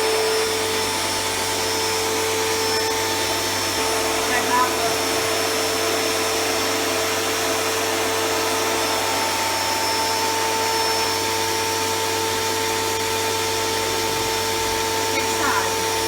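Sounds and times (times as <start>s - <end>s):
pressure washer motor whine: 0.0s - 16.0s.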